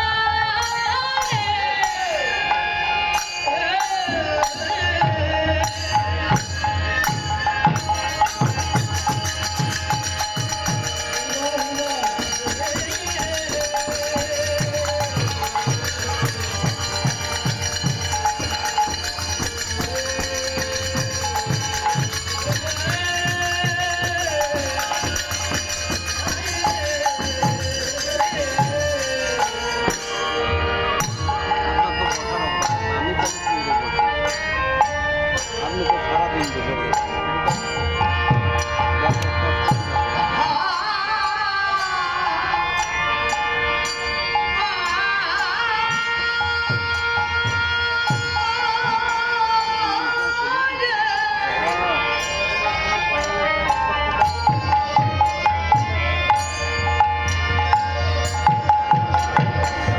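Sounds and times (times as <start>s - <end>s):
devotional music: 0.0s - 59.9s
jingling cymbals: 0.6s - 59.9s
rapid hand-drum strokes: 4.4s - 30.2s.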